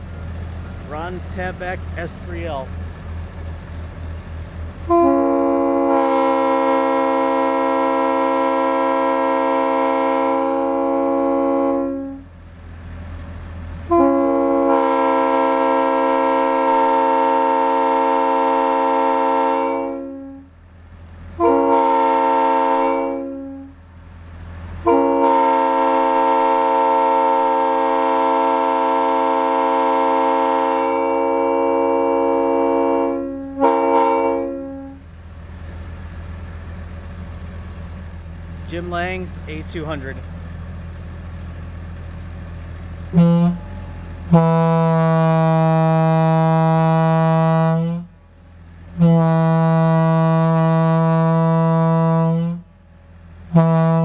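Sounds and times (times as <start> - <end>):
locomotive air horn blasts: 4.8 - 12.4, 13.8 - 20.6, 21.3 - 23.8, 24.8 - 35.1, 43.1 - 48.2, 48.9 - 52.8, 53.4 - 54.0.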